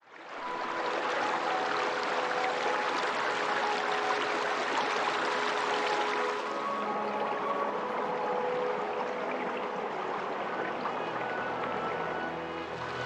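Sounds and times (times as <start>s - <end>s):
river water rushing: 0.0s - 13.0s
faint held musical tones: 0.2s - 13.0s.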